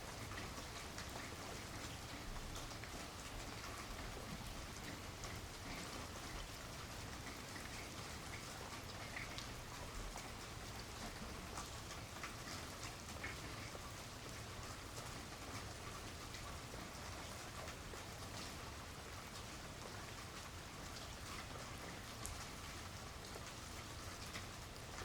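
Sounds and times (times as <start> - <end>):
raindrops pattering: 0.0 - 25.0.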